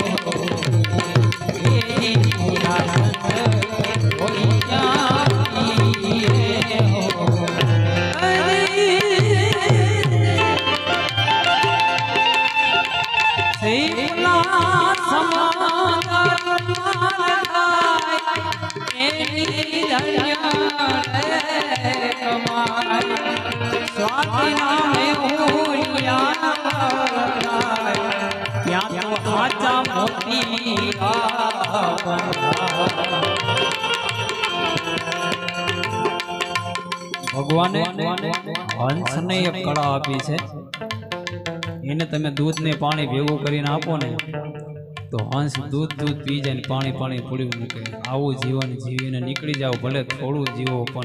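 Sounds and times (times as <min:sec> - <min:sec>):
ornamented melody line: 0:00.0 - 0:17.7, 0:18.6 - 0:48.0
tabla rhythm: 0:00.0 - 0:51.0.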